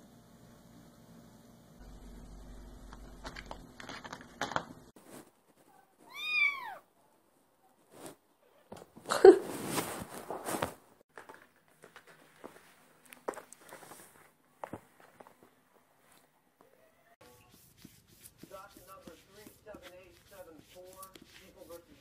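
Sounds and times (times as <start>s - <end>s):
cat meowing: 6.0s - 6.9s.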